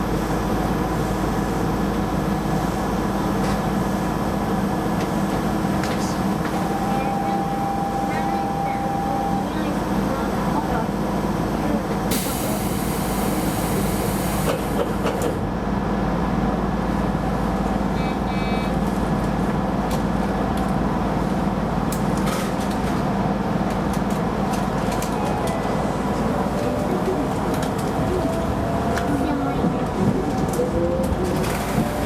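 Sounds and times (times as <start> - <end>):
train wheels rumbling: 0.0 - 15.6, 21.6 - 32.0
beeping: 6.6 - 9.8.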